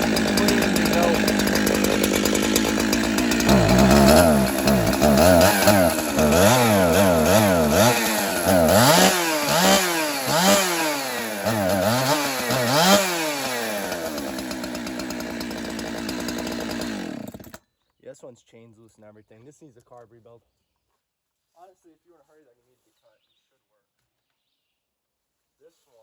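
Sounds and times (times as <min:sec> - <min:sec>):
chainsaw revving and idling: 0:00.0 - 0:17.6.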